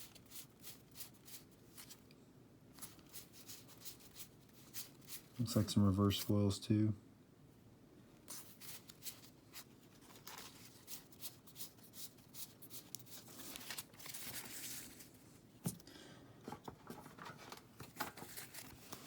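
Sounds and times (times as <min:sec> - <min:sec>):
cards sliding rustle: 0:00.0 - 0:02.0, 0:02.8 - 0:05.4, 0:08.2 - 0:15.8, 0:17.0 - 0:19.0.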